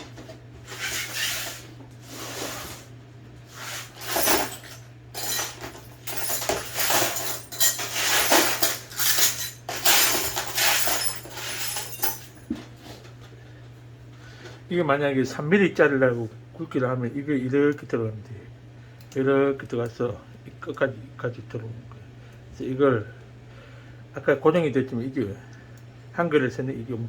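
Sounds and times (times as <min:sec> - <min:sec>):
steady low hum: 0:00.0 - 0:27.0
metal tools clinking and scraping: 0:03.6 - 0:12.6.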